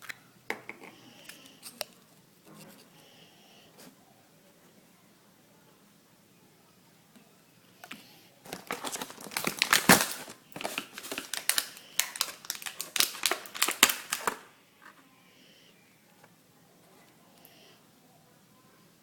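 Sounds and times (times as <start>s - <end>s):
plastic packaging crinkling: 8.4s - 14.5s.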